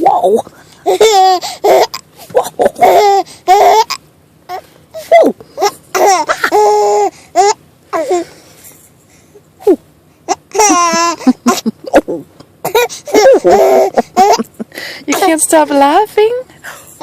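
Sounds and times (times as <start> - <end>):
baby laughing: 0.8 - 4.0, 5.6 - 8.3, 9.7 - 15.3.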